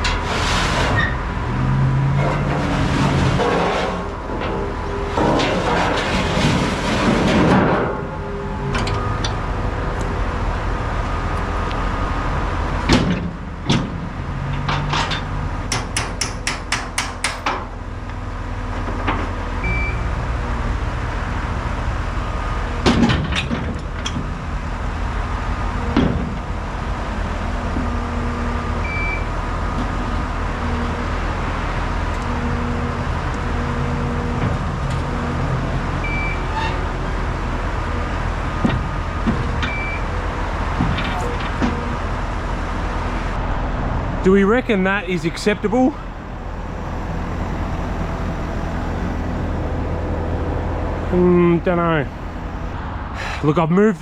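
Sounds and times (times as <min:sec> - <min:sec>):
engine running: 0:00.0 - 0:53.8
metal clanks and knocks: 0:12.9 - 0:17.7.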